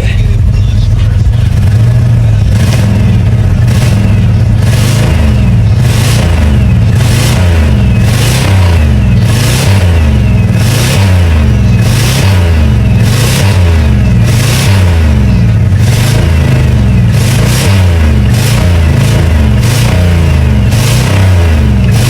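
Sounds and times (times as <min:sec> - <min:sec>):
car engine revving: 0:00.0 - 0:22.0.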